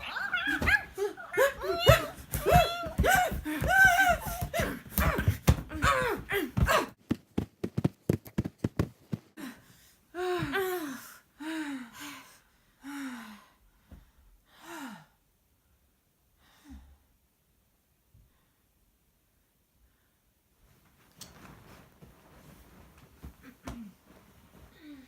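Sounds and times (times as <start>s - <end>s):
women vocalizing: 0.0s - 7.0s.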